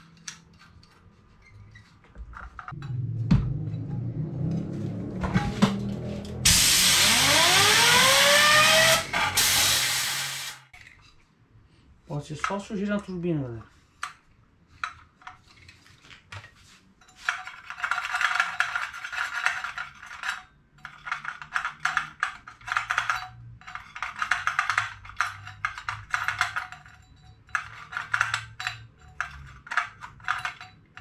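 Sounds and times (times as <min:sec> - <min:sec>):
tool clicking and rattling on plastic: 0:17.2 - 0:31.0.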